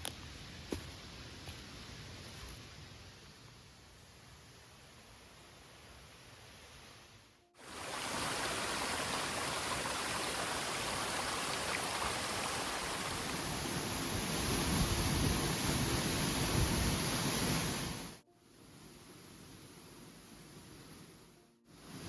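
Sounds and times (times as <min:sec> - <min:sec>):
waterfall rushing: 0:07.6 - 0:18.1.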